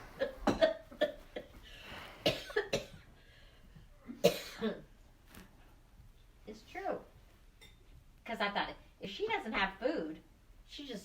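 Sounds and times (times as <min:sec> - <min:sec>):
elderly woman coughing: 0:00.0 - 0:01.6, 0:02.2 - 0:03.1, 0:04.1 - 0:04.9.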